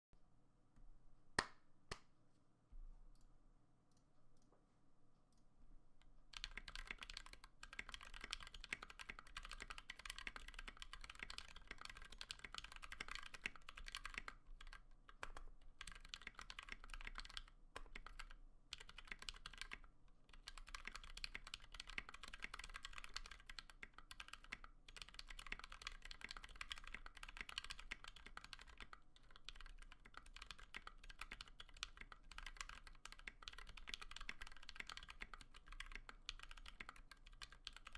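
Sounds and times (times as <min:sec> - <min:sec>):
typing on mechanical keyboard: 0:06.3 - 0:37.9.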